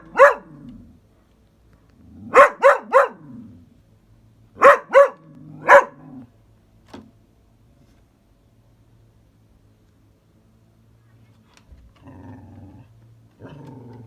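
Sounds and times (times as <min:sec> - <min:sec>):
dog barking: 0:00.0 - 0:00.6, 0:02.3 - 0:03.4, 0:04.6 - 0:06.2.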